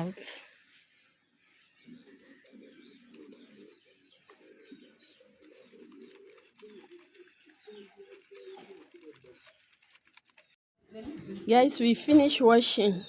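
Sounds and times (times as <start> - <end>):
bird cooing: 1.6 - 9.6.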